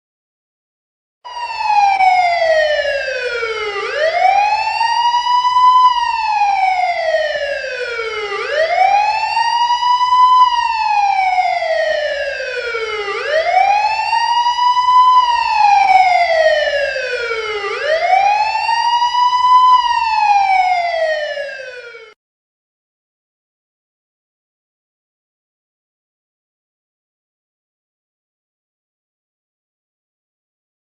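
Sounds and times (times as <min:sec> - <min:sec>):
police siren wailing: 0:01.3 - 0:22.2.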